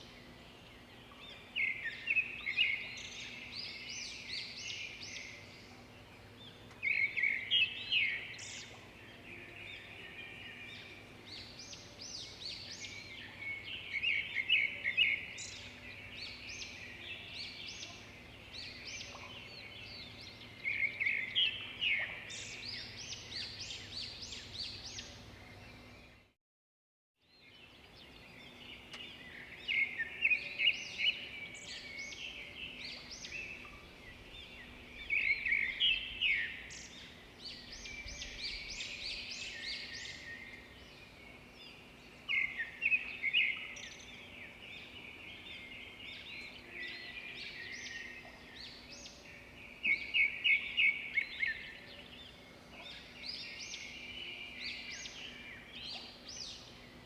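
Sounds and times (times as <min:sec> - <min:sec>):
small birds chirping: 0:27.3 - 0:57.0.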